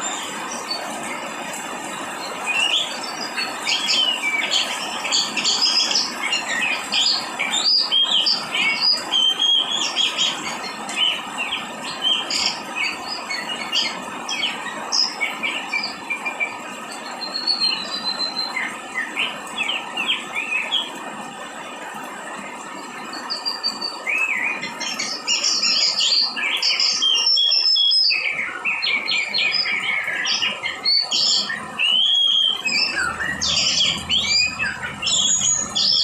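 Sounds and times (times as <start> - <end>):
rain falling: 0.0 - 17.2, 29.4 - 36.0
small birds chirping: 0.0 - 21.0, 22.8 - 36.0.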